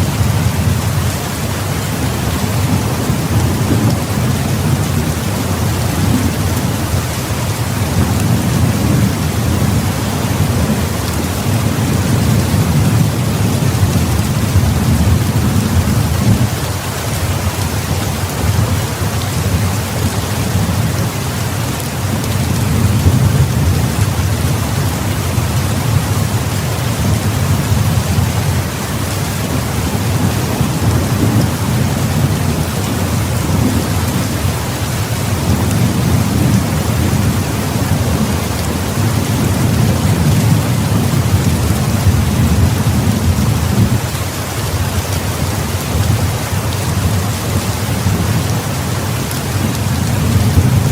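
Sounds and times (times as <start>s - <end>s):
rolling thunder rumble: 0.0s - 48.7s, 49.3s - 50.9s
heavy rain pouring: 0.0s - 50.9s.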